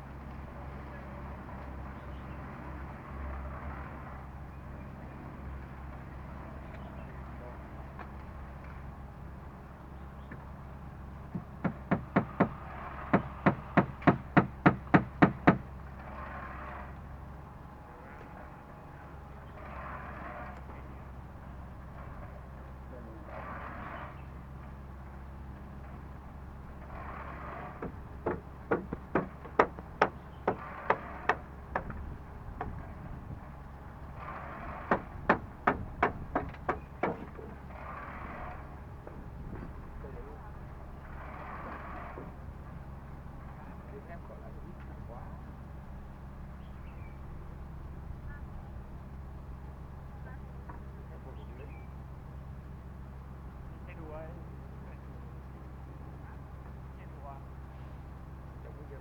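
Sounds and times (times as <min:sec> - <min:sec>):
hammer blows: 0:27.4 - 0:32.9, 0:34.2 - 0:37.6.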